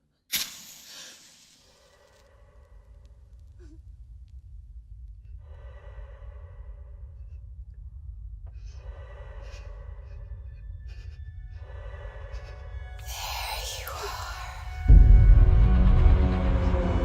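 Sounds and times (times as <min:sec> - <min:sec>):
low rumble: 0:02.0 - 0:17.0
breath-like swells: 0:13.0 - 0:14.9.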